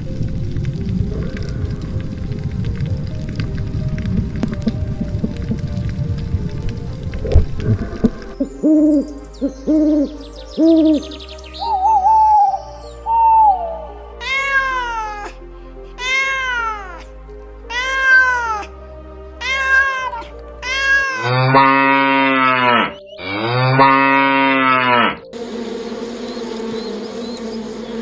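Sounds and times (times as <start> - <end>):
cat meowing: 14.2 - 15.4, 16.0 - 17.1, 17.7 - 18.7, 19.4 - 21.6
deep drawn-out animal calls: 19.4 - 25.3.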